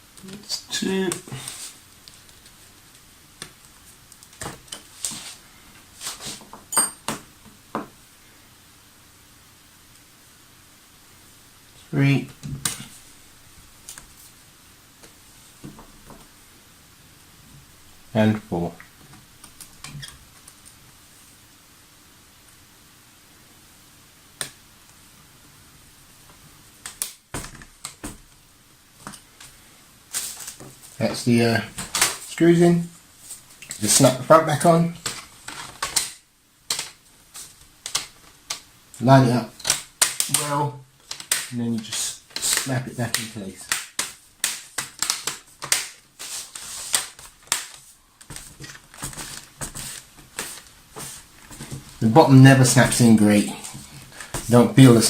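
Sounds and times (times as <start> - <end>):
plastic clips snapping into place: 39.6 - 40.4.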